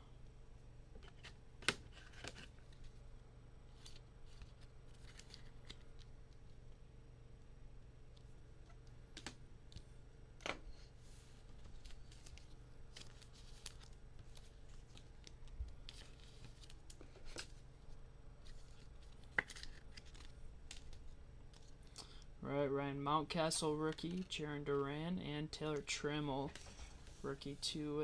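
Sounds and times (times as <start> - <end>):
trading cards being handled: 3.7 - 6.5, 11.1 - 22.0, 23.8 - 24.9.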